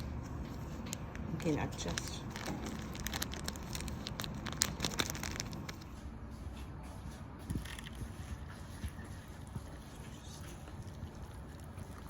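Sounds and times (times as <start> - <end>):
seasoning packet crinkling: 1.0 - 5.9.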